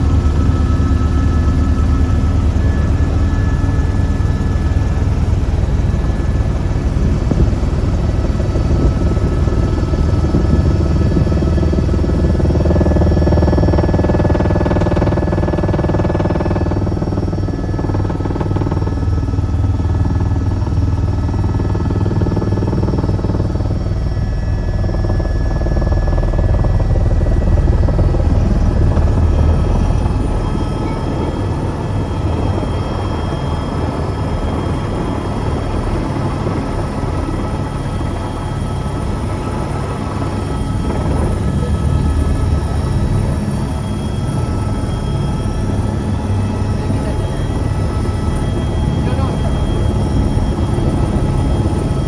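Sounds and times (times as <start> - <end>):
helicopter rotors and turbines: 0.0 - 52.0.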